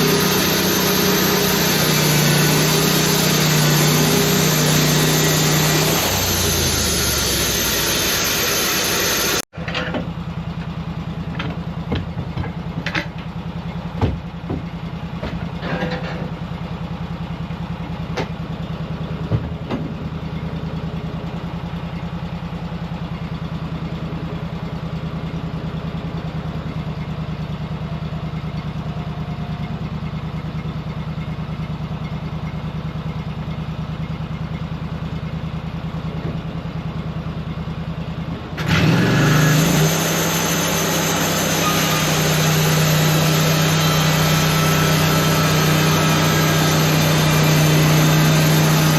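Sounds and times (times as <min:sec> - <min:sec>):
sawmill blade cutting wood: 0:00.0 - 0:09.5, 0:38.6 - 0:48.9
engine idling: 0:00.0 - 0:48.9
sharp knocks and clunks: 0:11.3 - 0:13.3, 0:13.9 - 0:16.3, 0:19.2 - 0:20.0.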